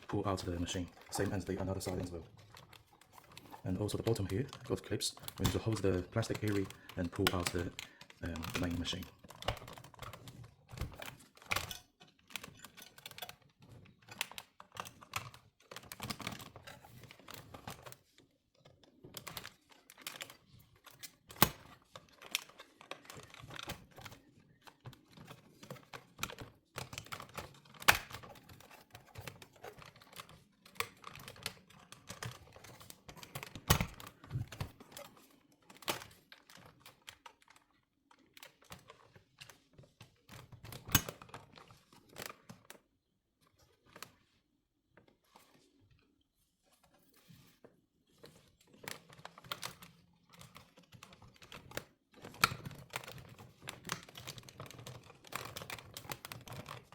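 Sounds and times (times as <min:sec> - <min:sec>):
plastic trim clicking and snapping: 0:00.0 - 0:18.0, 0:19.1 - 0:37.6.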